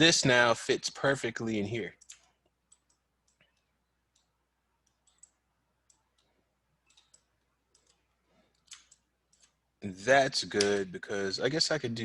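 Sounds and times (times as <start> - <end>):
mouse and keyboard clicking: 2.0 - 9.6.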